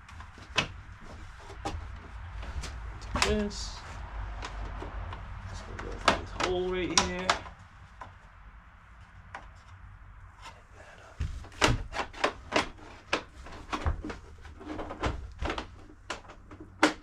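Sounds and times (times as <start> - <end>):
hard parts clicking and knocking: 4.3 - 8.3, 11.2 - 17.0.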